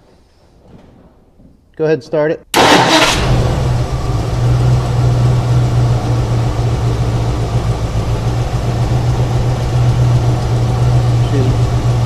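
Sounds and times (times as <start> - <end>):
car engine idling: 2.6 - 12.0.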